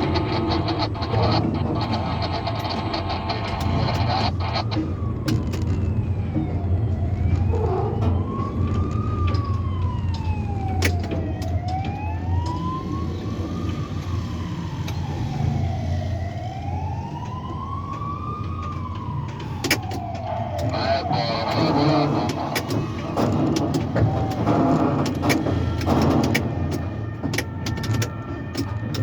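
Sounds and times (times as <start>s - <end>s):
sharp clicks: 0.0s - 5.7s, 19.4s - 29.0s
siren wailing: 0.0s - 29.0s.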